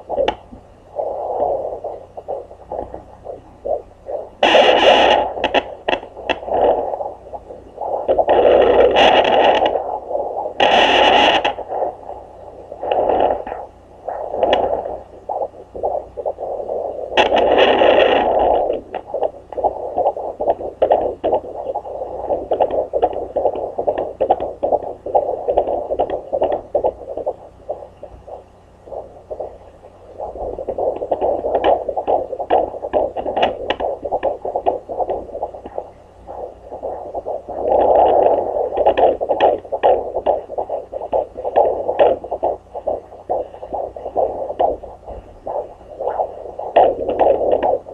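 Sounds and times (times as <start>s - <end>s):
crackling from speaker: 0.0s - 47.9s
doppler heartbeat whooshing: 0.0s - 47.9s.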